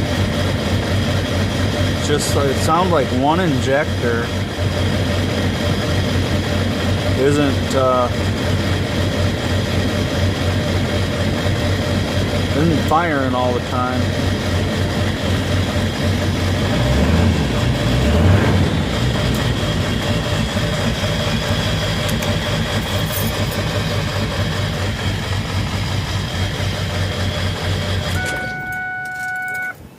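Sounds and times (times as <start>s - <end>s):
diesel engine idling roughly: 0.0s - 29.0s.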